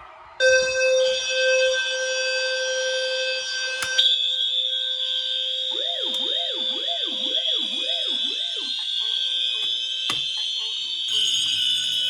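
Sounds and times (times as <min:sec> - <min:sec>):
buzzing alarm horn: 0:00.4 - 0:12.0
shrill high alarm tone: 0:00.4 - 0:12.0
wailing siren tone: 0:00.4 - 0:12.0
click: 0:06.1 - 0:06.3.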